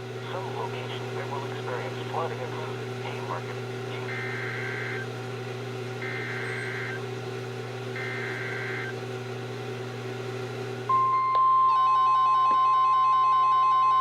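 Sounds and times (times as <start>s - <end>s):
low radio hum: 0.0s - 11.4s
two-tone data squawk: 4.0s - 5.1s, 6.0s - 7.0s, 8.0s - 8.9s.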